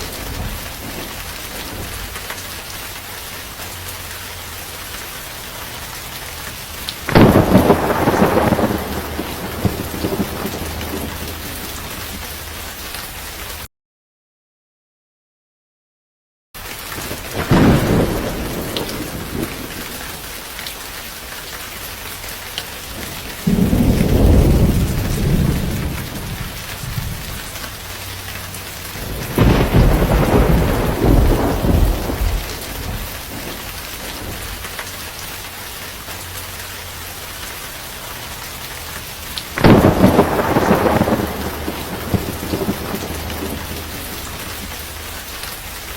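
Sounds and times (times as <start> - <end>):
steady rain: 0.0 - 13.7, 16.6 - 45.9
rolls of thunder: 7.1 - 12.2, 17.0 - 20.0, 23.4 - 27.4, 29.0 - 34.4, 39.6 - 44.7.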